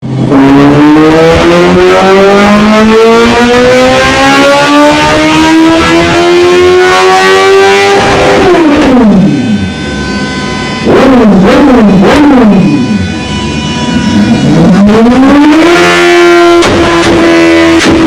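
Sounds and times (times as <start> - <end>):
motorcycle engine revving loud: 0.0 - 18.0.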